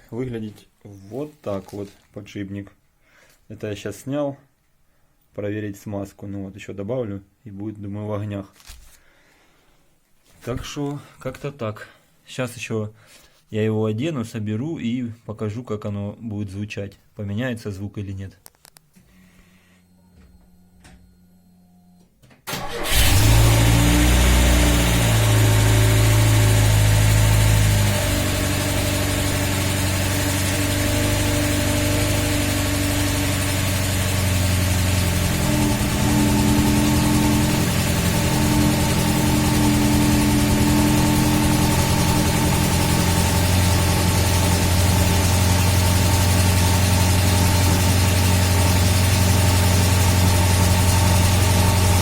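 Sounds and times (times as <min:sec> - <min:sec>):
car engine starting and idling: 0:22.5 - 0:52.0.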